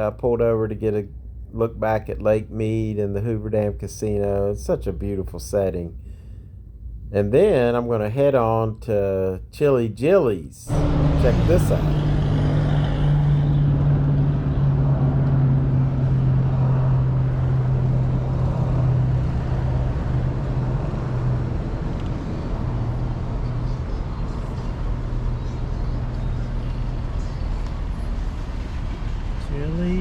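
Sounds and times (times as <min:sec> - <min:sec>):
car engine running: 0:10.7 - 0:30.0.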